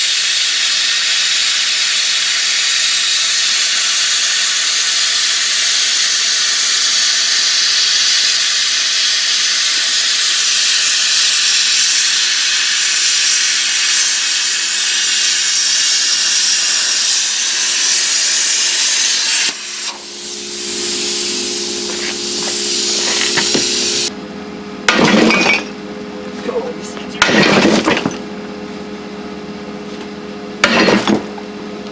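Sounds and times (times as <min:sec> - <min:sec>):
plasma cutter hissing: 0:00.0 - 0:24.1
low steady hum: 0:19.5 - 0:31.9
loud metal clank: 0:19.8 - 0:24.1, 0:24.8 - 0:25.8, 0:27.2 - 0:28.3, 0:30.6 - 0:31.4.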